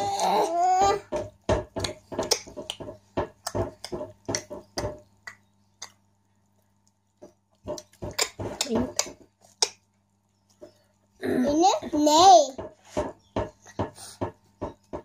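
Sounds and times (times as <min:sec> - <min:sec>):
mouth clicks and smacks: 0:01.8 - 0:06.2, 0:06.8 - 0:10.7.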